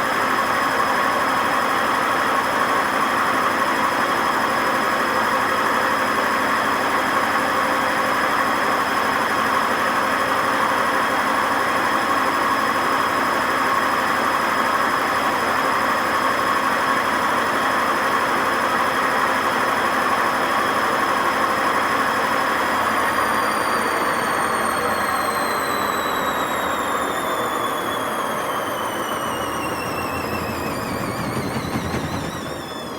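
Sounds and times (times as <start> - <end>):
washing machine spinning: 27.3 - 32.9
high whine: 28.8 - 32.9
grinding drone of worn bearings: 29.1 - 32.9.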